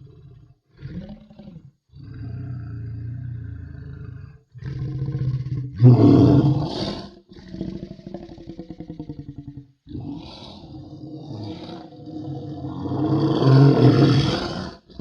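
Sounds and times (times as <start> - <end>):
monster roars and growls: 11.5 - 14.8.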